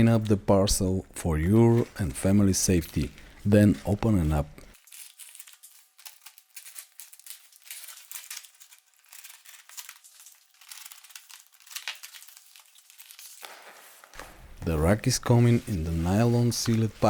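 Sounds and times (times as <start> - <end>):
packaging crinkling and rustling: 1.4 - 17.0.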